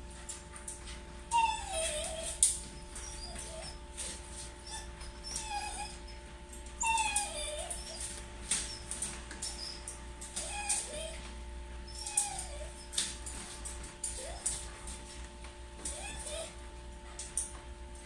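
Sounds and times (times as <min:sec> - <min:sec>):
dog whining: 0:01.3 - 0:13.4, 0:14.0 - 0:14.7, 0:15.9 - 0:16.7.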